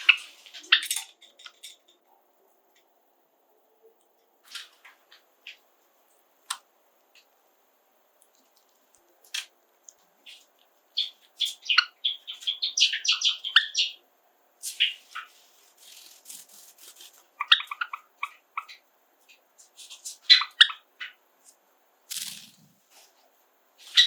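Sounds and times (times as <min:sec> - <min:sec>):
sparrows chirping and singing: 0:10.2 - 0:14.0, 0:14.7 - 0:16.1
soft rustle: 0:14.6 - 0:17.3, 0:21.4 - 0:24.0.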